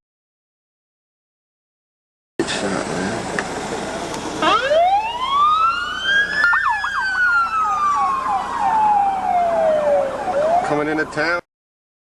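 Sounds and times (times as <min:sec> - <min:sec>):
emergency vehicle siren: 0:04.4 - 0:11.4.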